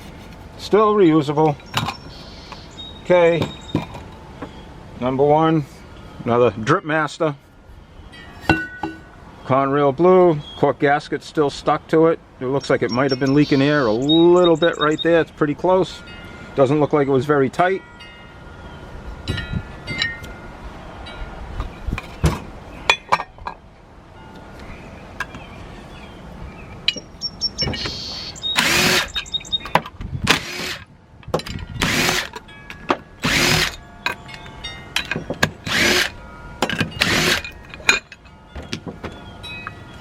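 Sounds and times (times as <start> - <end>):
power tool bursts: 28.6 - 29.2, 30.3 - 30.9, 31.8 - 32.3, 33.2 - 33.8, 35.6 - 36.2, 37.0 - 37.6
light metal clicks and clinks: 34.0 - 35.5.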